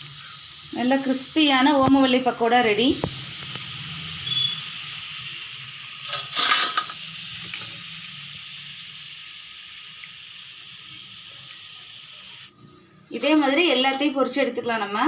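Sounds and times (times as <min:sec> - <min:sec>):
food deep-frying in oil: 0:00.0 - 0:15.0.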